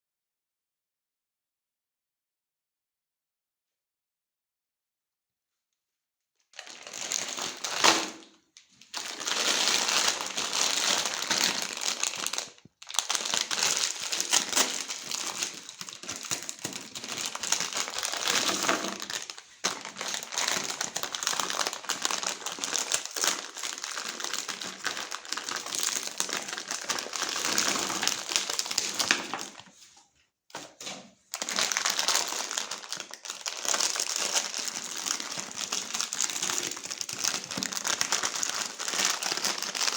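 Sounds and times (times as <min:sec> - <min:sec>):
meat grinder crunching candy: 0:06.6 - 0:08.2, 0:08.8 - 0:29.6, 0:31.4 - 0:39.9.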